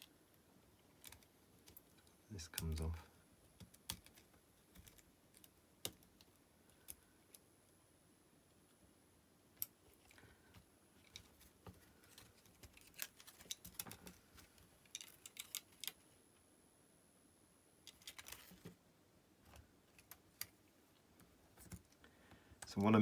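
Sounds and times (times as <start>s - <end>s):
plastic and metal parts clicking: 11.0s - 16.0s.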